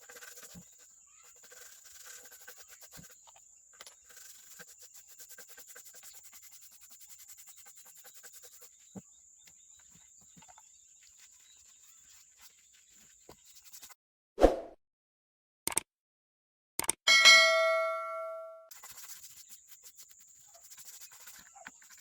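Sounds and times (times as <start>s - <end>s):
rapid scrubbing strokes: 0.0s - 3.2s, 4.0s - 8.9s.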